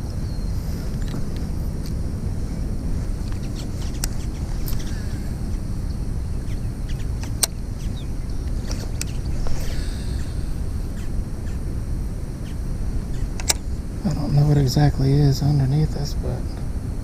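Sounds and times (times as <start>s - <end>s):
faint bird chirps: 0.0s - 1.2s, 3.4s - 11.7s, 12.4s - 13.4s
sharp clicks: 13.3s - 13.7s.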